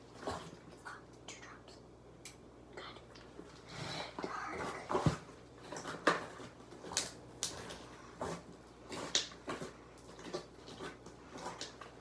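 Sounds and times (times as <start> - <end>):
slime squelching: 3.0 - 12.0.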